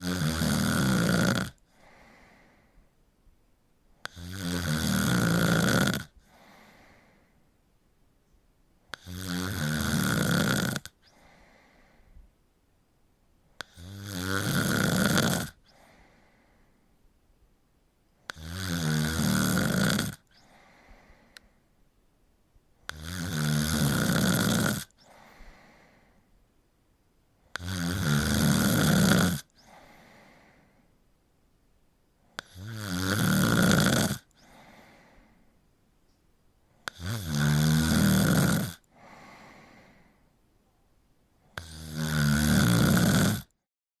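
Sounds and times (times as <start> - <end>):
person snoring: 0.0 - 2.5, 4.0 - 7.2, 8.9 - 11.9, 13.6 - 16.4, 18.3 - 21.4, 22.9 - 26.0, 27.5 - 30.6, 32.4 - 35.3, 36.8 - 40.1, 41.6 - 43.6
faint breath: 1.6 - 3.0, 6.2 - 7.6, 11.0 - 12.4, 15.6 - 17.0, 20.3 - 21.8, 25.0 - 26.4, 29.5 - 31.0, 34.3 - 35.7, 38.9 - 40.4.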